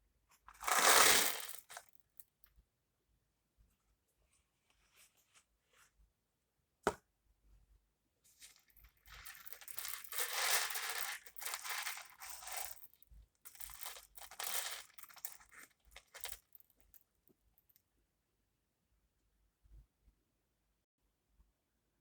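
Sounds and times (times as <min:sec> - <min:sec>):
beads clattering and rustling: 0:00.5 - 0:01.9, 0:08.4 - 0:17.0.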